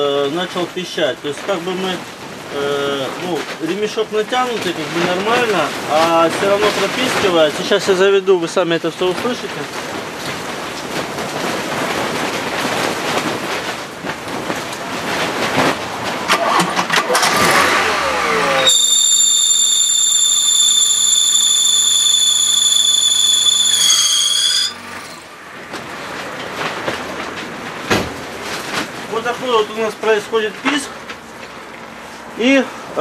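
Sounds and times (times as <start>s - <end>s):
drive belt squealing: 17.2s - 25.3s.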